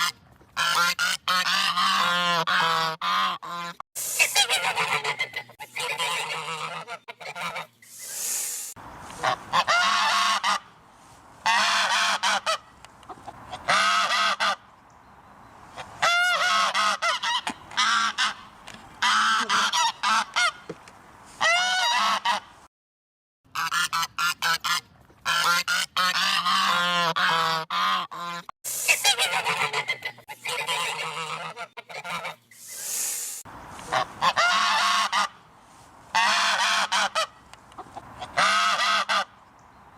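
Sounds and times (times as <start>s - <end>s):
geese honking: 0.0s - 7.8s, 9.1s - 10.8s, 11.4s - 14.7s, 15.8s - 20.7s, 21.4s - 22.5s, 23.6s - 32.5s, 33.8s - 35.5s, 36.1s - 39.4s.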